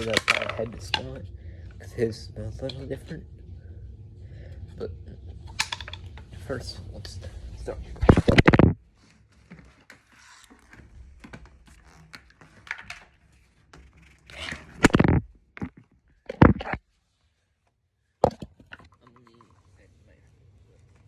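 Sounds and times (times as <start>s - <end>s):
vacuum parts clicking and scraping: 0.0s - 1.4s, 5.4s - 16.8s.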